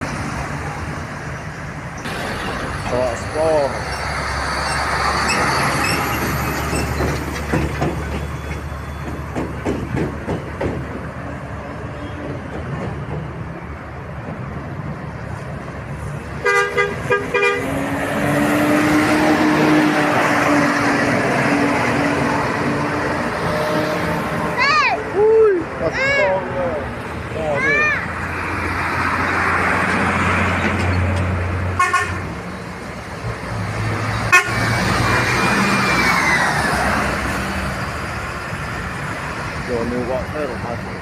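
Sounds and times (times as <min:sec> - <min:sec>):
engine noise: 0:00.0 - 0:41.0
road traffic: 0:00.0 - 0:41.0
bus horn: 0:16.4 - 0:17.8, 0:31.8 - 0:32.3, 0:34.3 - 0:34.7.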